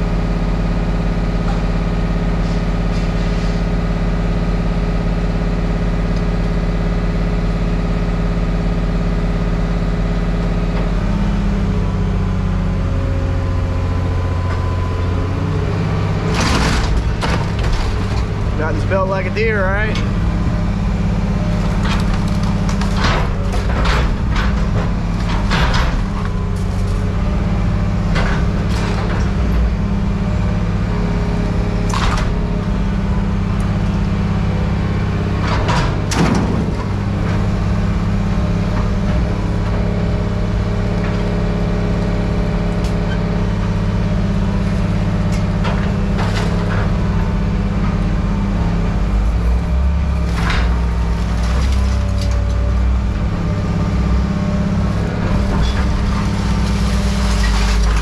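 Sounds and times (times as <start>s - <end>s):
heavy machine engine running: 0.0s - 58.0s
scrap metal clanking: 55.0s - 58.0s.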